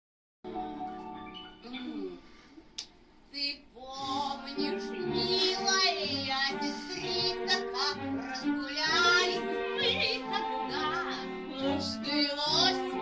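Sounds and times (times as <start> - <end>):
high voice singing: 3.8 - 13.0.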